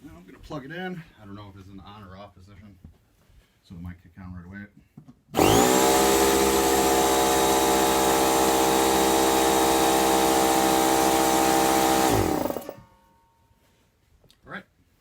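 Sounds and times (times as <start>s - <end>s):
motor winding down: 5.4s - 12.8s
air compressor running: 5.4s - 12.9s.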